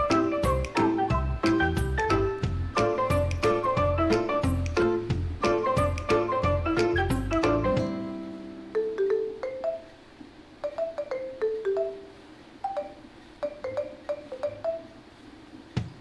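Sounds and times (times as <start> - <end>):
light melody of struck notes: 0.0 - 9.8.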